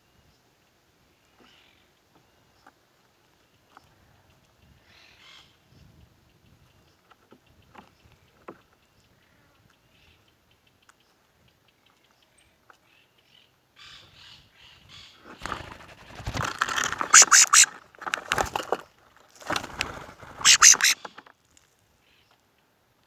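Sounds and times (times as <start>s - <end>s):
birds harsh calls: 15.4s - 18.8s, 19.4s - 21.2s
sharp bird chirps: 16.7s - 17.7s, 20.4s - 21.0s.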